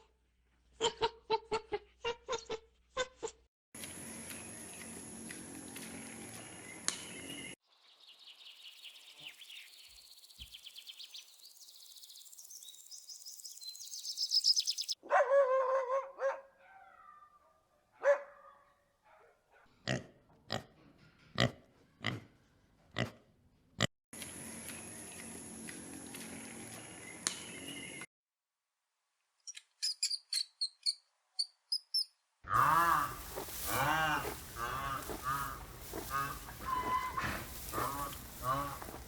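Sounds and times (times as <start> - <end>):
dog barking: 15.0 - 19.7
pitched animal call: 32.5 - 39.0.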